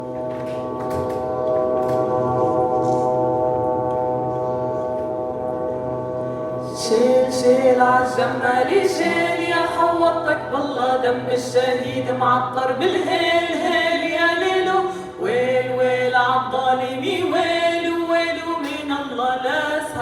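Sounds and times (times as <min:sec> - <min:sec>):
drone buzzing hum: 0:00.0 - 0:18.2
voices singing: 0:06.7 - 0:20.0.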